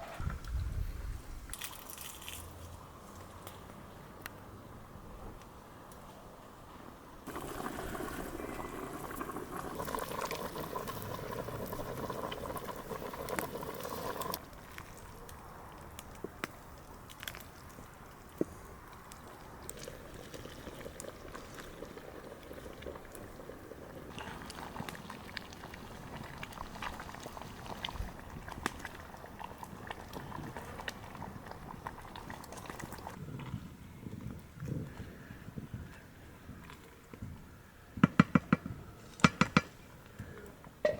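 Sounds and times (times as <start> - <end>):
quiet liquid noise: 0.0 - 4.4, 7.2 - 37.7
liquid pouring or bubbling: 7.3 - 14.4, 19.6 - 33.2.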